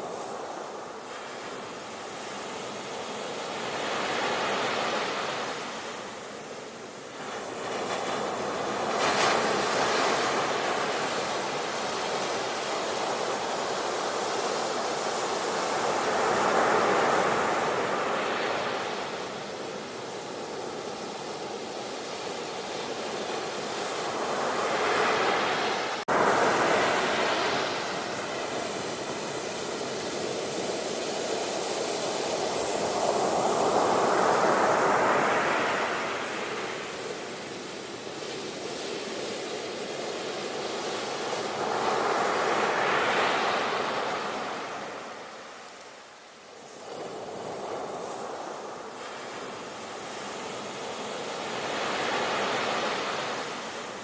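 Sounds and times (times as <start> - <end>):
sea waves breaking: 21.9 - 39.2.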